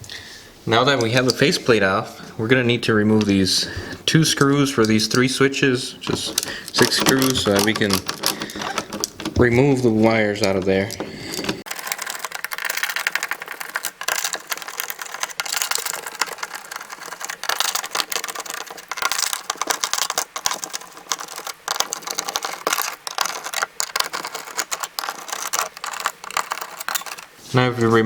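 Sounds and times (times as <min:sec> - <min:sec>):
metal screws clicking and rattling: 0:04.7 - 0:27.4.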